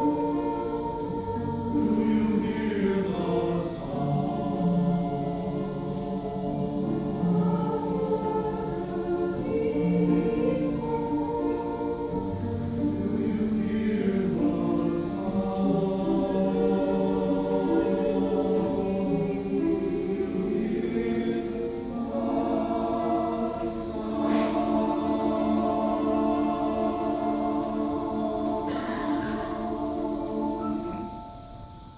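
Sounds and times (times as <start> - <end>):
church choir singing: 0.0 - 31.9.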